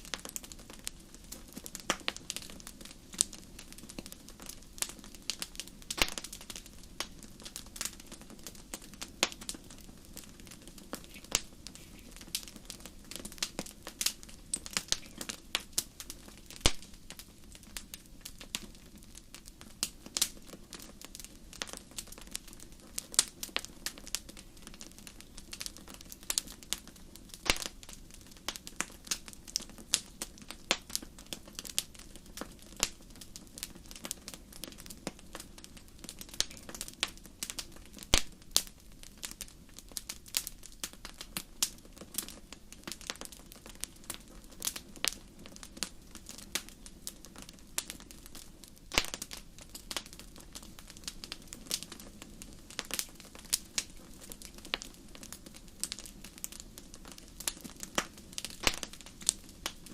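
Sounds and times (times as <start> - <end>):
faint steady hiss: 0.0 - 59.9
wood fire crackling and popping: 0.0 - 59.9.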